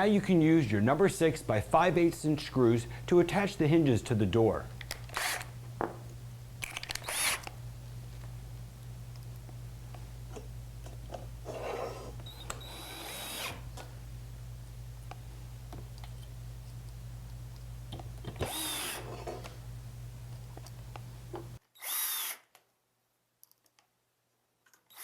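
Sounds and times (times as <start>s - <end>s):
drill driving screws into wood: 4.9s - 5.5s, 6.6s - 7.5s, 11.6s - 13.7s, 18.3s - 19.4s, 21.8s - 22.6s.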